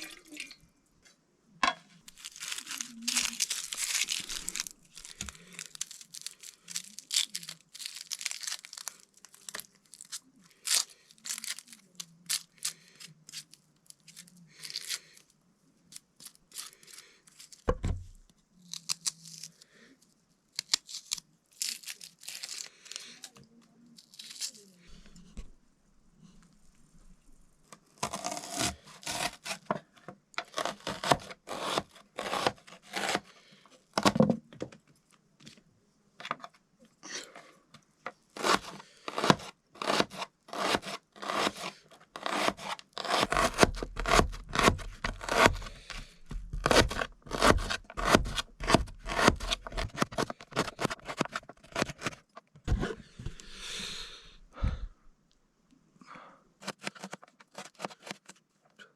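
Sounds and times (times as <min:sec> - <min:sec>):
food scraping and rubbing strokes: 0:02.0 - 0:09.4, 0:38.3 - 0:53.7.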